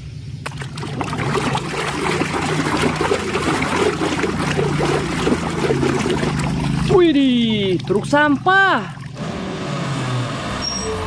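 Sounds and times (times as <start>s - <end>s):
water running and splashing: 0.5s - 9.2s.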